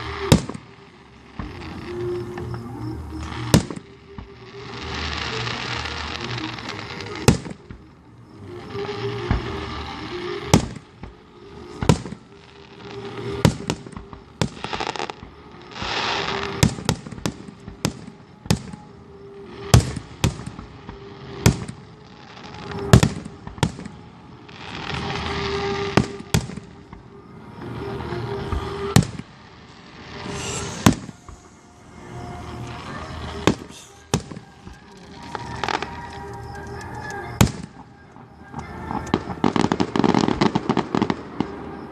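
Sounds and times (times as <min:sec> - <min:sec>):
fireworks bangs: 0:00.0 - 0:41.9
fireworks hiss: 0:00.0 - 0:41.9.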